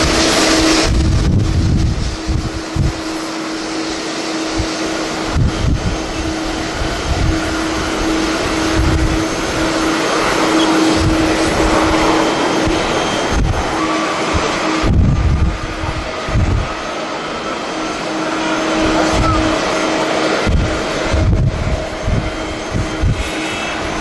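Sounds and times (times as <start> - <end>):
jet engines rushing: 0.0 - 24.0
low hum: 0.0 - 24.0
wind buffeting microphone: 0.0 - 24.0.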